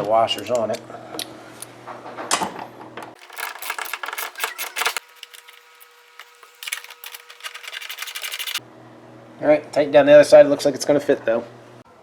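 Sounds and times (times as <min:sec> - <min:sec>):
small metal parts clinking: 0:03.2 - 0:08.6.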